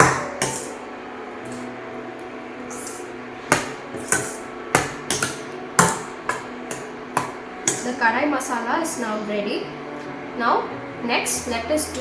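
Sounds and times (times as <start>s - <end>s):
spoon clinking against pan: 0.0s - 0.8s, 2.7s - 8.0s
soft background music: 0.0s - 12.0s.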